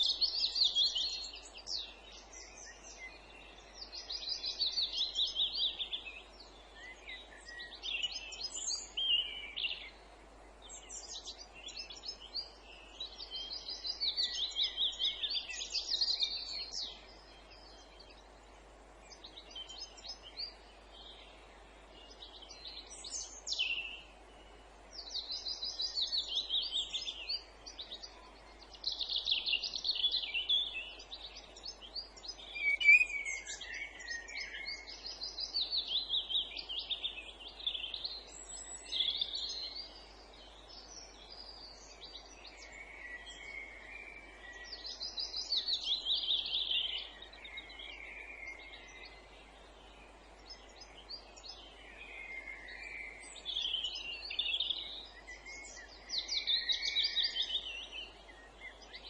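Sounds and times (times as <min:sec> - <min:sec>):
faint background hiss: 0:00.0 - 0:59.0
songbirds singing trills: 0:00.0 - 0:59.0.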